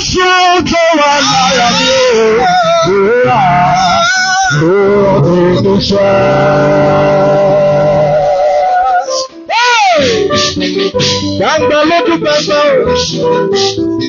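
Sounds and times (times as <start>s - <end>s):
man singing with wavering voice: 0.0s - 9.3s.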